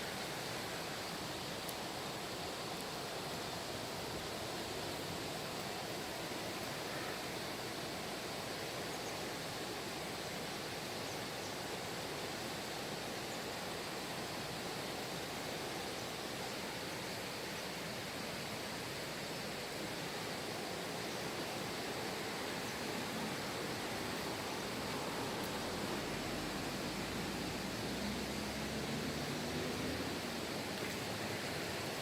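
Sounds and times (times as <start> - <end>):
stream rushing: 0.0 - 32.0.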